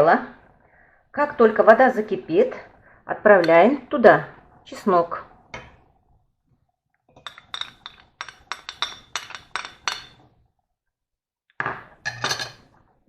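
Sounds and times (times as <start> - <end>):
utensil clinking on saucepan: 7.2 - 10.3, 12.0 - 12.6.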